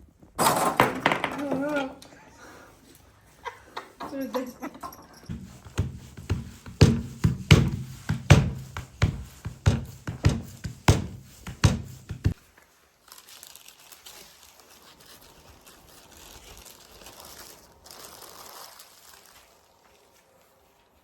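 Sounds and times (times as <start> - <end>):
faint crinkling and rustling: 1.4 - 21.0
heavy knocks: 5.3 - 12.4.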